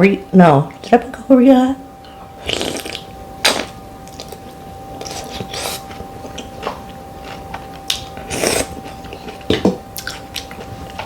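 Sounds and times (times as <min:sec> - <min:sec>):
chewing with wet mouth smacks: 0:05.0 - 0:11.0.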